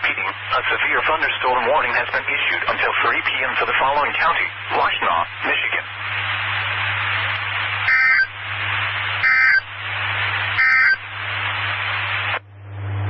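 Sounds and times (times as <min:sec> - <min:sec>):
radio hiss: 0:00.0 - 0:12.4
low hum: 0:04.5 - 0:13.0
warbling digital data bursts: 0:07.8 - 0:08.4, 0:09.2 - 0:09.7, 0:10.6 - 0:11.0.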